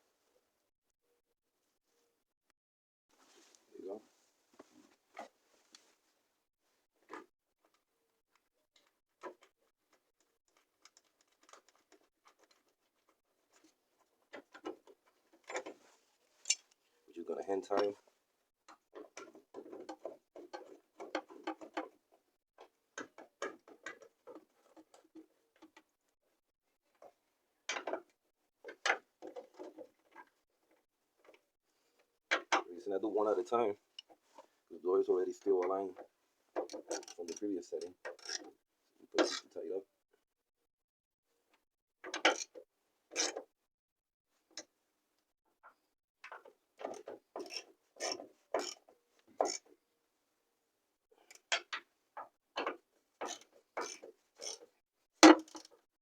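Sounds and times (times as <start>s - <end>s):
metallic clicks and scrapes of bolts: 16.4s - 16.8s, 36.6s - 37.4s, 38.1s - 38.5s, 42.1s - 43.4s, 46.4s - 48.8s, 52.6s - 54.6s, 55.2s - 55.7s.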